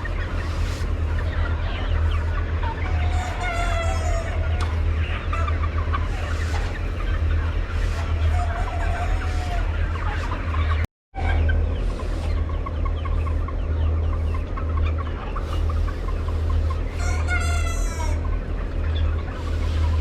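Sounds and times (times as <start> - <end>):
chickens clucking: 0.0 - 20.0
rooster crowing: 17.0 - 18.2.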